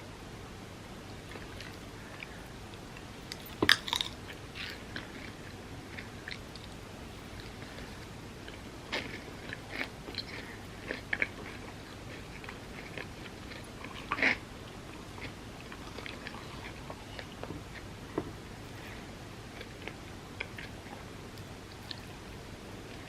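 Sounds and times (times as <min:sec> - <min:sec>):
person chewing: 0:01.3 - 0:17.9, 0:18.7 - 0:22.2
food crunching: 0:01.3 - 0:18.1, 0:18.7 - 0:22.2.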